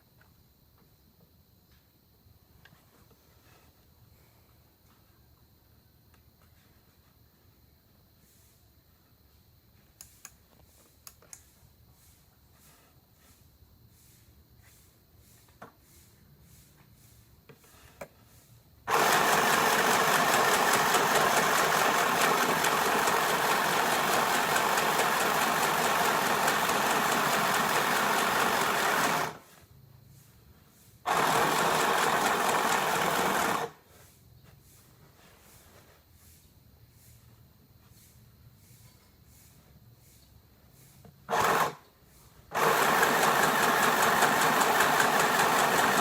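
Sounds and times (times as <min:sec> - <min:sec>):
sewing machine stitching: 0:18.9 - 0:29.4, 0:31.1 - 0:33.8, 0:41.3 - 0:41.8, 0:42.5 - 0:46.0.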